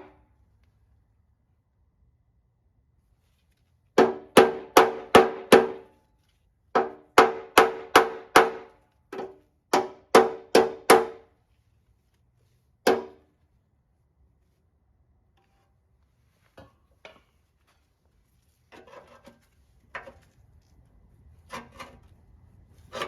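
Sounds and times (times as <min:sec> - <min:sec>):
hammer striking steel: 0:06.8 - 0:11.2, 0:12.9 - 0:13.2.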